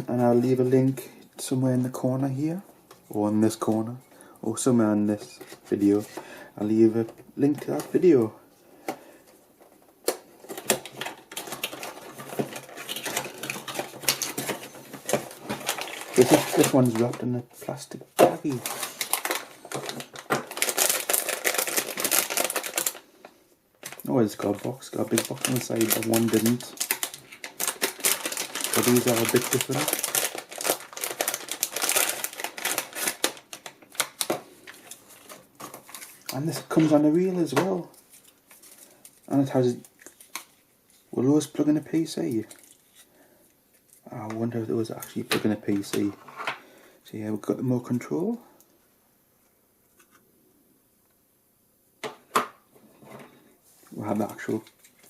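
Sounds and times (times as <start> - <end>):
plastic packaging crinkling: 10.1 - 41.2.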